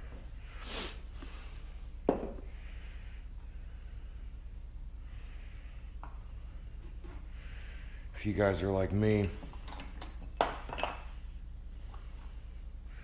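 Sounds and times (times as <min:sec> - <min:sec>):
steady low hum: 0:00.0 - 0:13.0
hand tool clink: 0:09.2 - 0:11.2.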